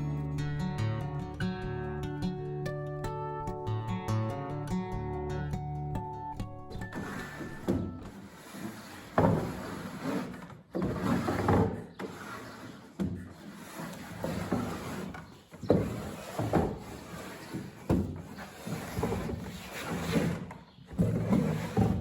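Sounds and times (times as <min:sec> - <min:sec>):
wooden baler parts knocking: 0:06.8 - 0:22.0.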